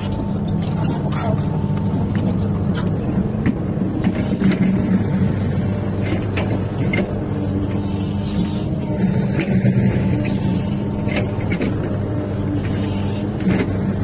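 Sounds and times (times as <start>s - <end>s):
diesel engine running under load: 0.0s - 14.0s.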